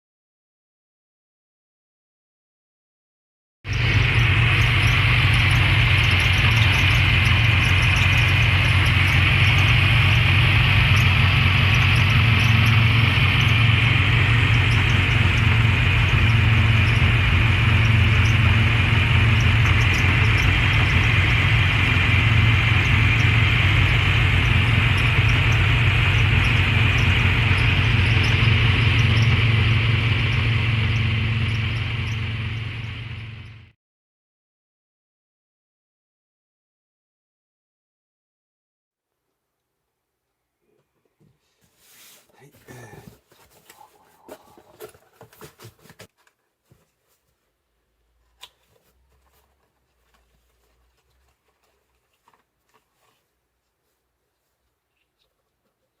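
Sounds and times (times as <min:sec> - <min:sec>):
car engine running: 0:03.7 - 0:33.8
high-pitched whine: 0:03.7 - 0:33.8.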